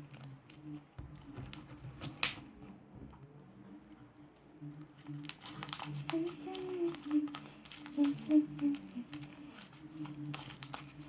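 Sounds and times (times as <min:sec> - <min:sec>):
low steady hum: 0:00.0 - 0:11.0
slime squishing by hand: 0:05.0 - 0:11.0.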